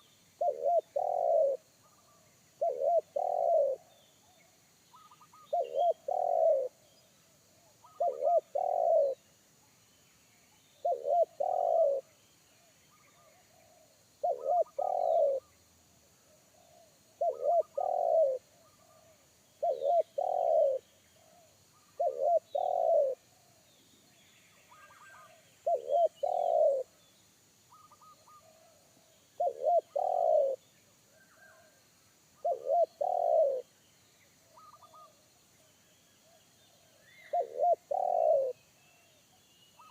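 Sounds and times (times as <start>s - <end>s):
dove cooing: 0.0s - 3.9s, 4.9s - 6.8s, 7.8s - 9.2s, 10.8s - 12.1s, 13.2s - 15.5s, 16.5s - 23.2s, 24.7s - 26.9s, 27.7s - 30.6s, 32.4s - 33.7s, 34.6s - 35.2s, 36.3s - 38.6s
small birds chirping: 0.0s - 39.9s.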